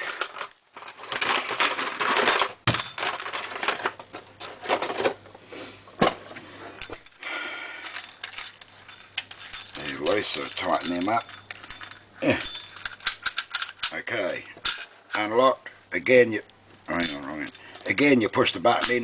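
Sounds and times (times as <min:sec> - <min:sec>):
metal lock parts clinking: 0:06.8 - 0:15.3, 0:16.9 - 0:18.0, 0:18.7 - 0:19.0.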